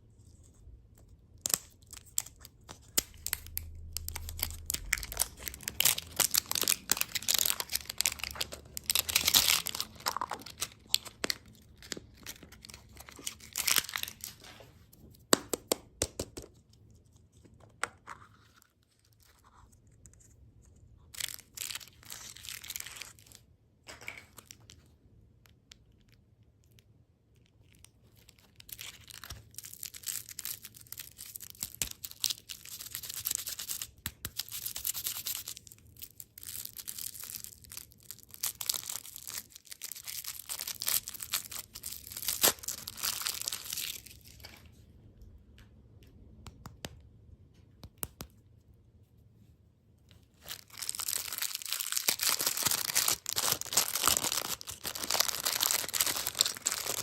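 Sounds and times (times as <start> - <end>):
plastic wrappers crinkling: 1.4 - 14.7, 21.1 - 23.4, 27.7 - 44.7, 50.3 - 57.0.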